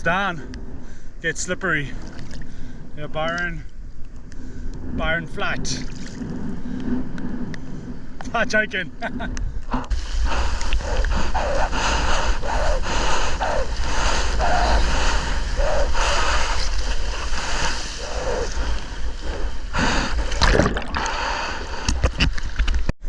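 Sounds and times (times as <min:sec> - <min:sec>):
wind rumbling on microphone: 0:00.0 - 0:23.0
water rushing and splashing: 0:09.9 - 0:22.6.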